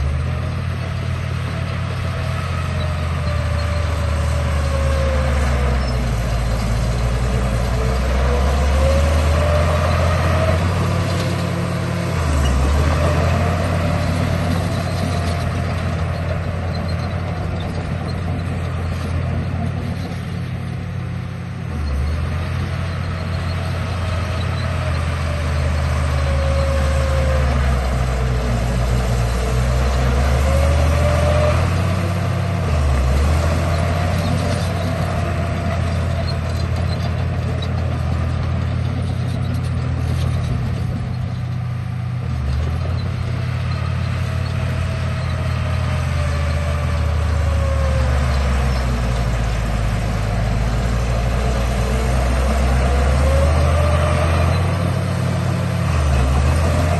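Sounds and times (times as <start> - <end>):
model bulldozer motor whine: 0.0 - 56.9.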